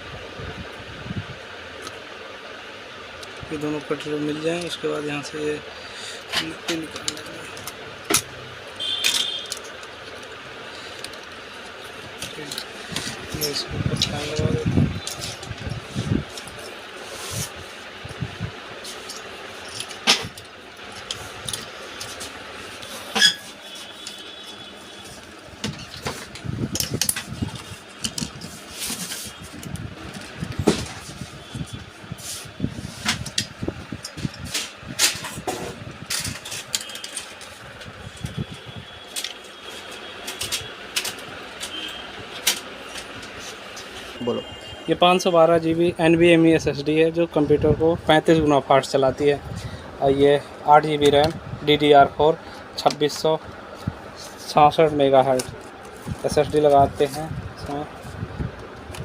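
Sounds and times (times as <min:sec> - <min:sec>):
steady background hiss: 0:00.0 - 0:29.6.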